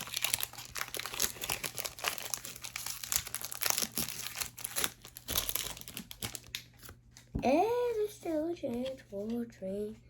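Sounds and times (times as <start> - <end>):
foil wrapper crinkling: 0.0 - 6.9.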